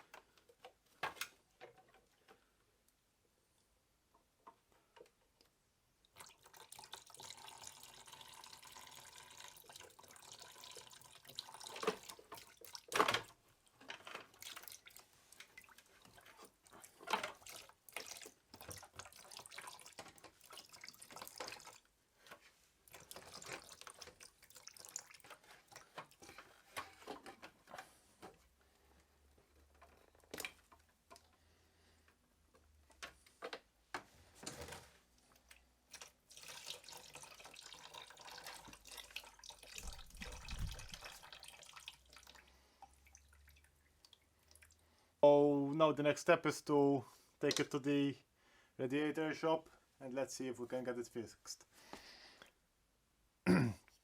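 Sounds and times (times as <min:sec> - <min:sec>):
liquid running and dripping: 0:06.0 - 0:22.0, 0:22.8 - 0:26.6, 0:35.3 - 0:44.9.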